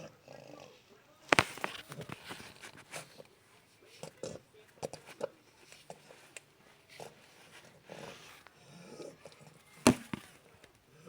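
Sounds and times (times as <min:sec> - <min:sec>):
puppy snoring: 0:00.0 - 0:03.3, 0:06.9 - 0:10.3.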